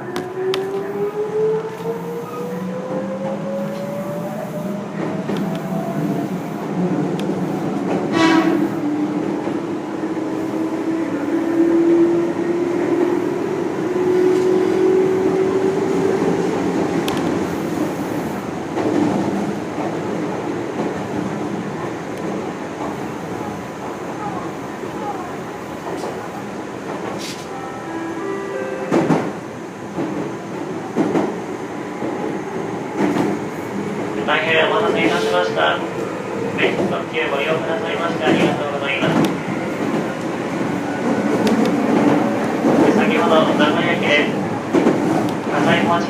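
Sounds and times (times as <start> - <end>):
wheels rumbling on rail: 0.0 - 46.0
train horn: 8.1 - 8.8.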